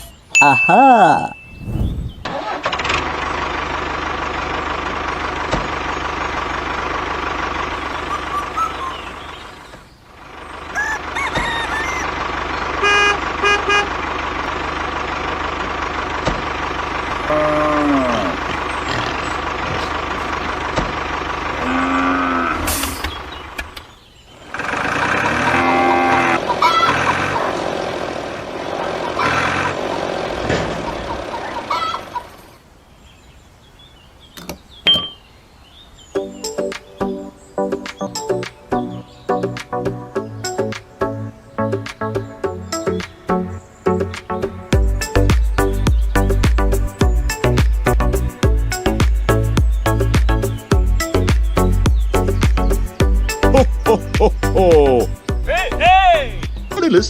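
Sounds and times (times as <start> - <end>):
short beeps: 0.5 - 1.6
truck engine running: 1.9 - 32.4, 44.2 - 57.0.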